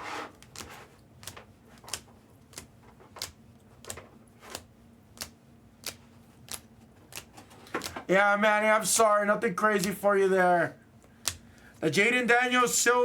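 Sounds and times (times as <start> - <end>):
trading cards snapping: 0.4 - 8.0, 11.2 - 11.5.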